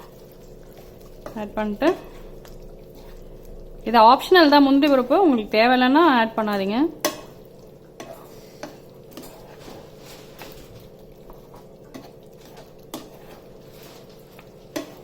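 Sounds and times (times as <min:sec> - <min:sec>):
metal spoon scraping a pan: 0:00.0 - 0:03.4, 0:07.0 - 0:10.6, 0:11.2 - 0:15.0.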